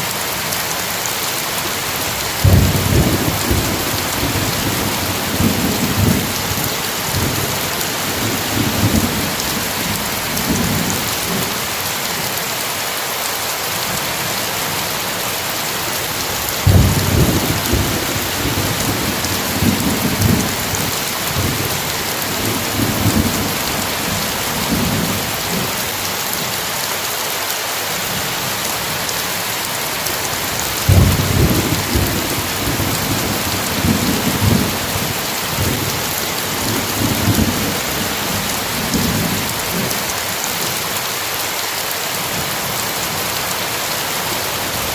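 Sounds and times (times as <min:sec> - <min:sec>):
heavy rain hissing: 0:00.0 - 0:44.9
thunder rumbling: 0:02.4 - 0:11.5, 0:16.4 - 0:25.7, 0:30.4 - 0:39.9
sharp thunderclap: 0:16.6 - 0:21.7, 0:30.9 - 0:39.8.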